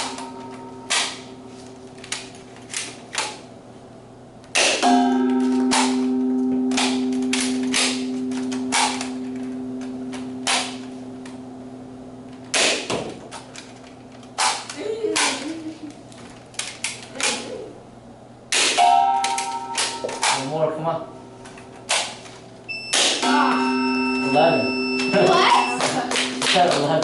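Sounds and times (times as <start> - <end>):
steady ringing tone: 0.0 - 1.6, 4.8 - 12.2, 22.7 - 27.0.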